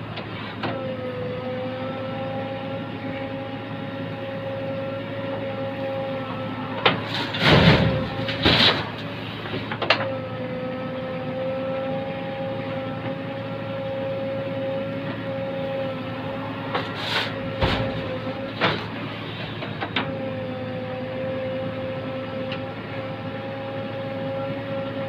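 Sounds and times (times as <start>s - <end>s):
diesel engine whining: 0.0s - 25.0s
loud metal clanks: 7.1s - 9.0s, 17.0s - 18.8s.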